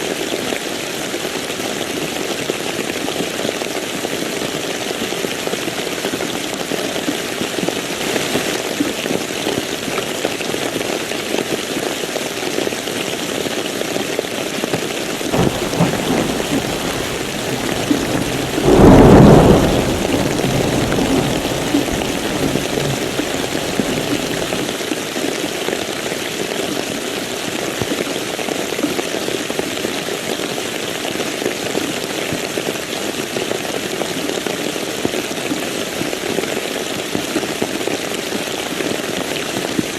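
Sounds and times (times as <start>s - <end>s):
thunder rumble and crack: 15.4s - 24.6s
heavy rain: 15.4s - 24.7s.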